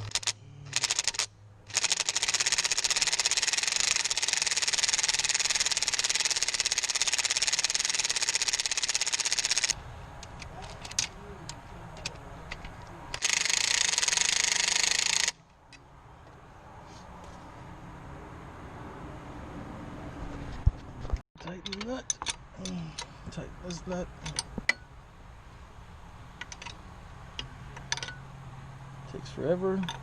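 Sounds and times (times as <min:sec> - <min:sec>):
scattered clicks: 0:00.0 - 0:15.8
impact wrench hammering: 0:12.0 - 0:15.4.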